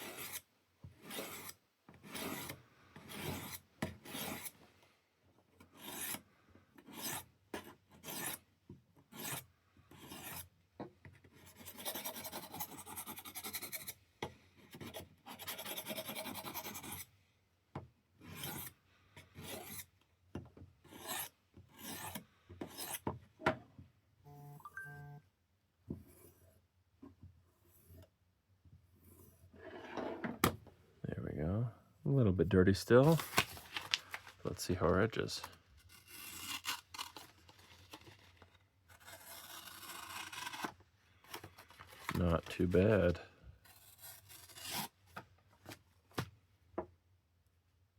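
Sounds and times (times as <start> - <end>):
knife scraping on sharpener: 8.0 - 8.4, 43.7 - 44.9
brief pitched tone: 24.3 - 25.3.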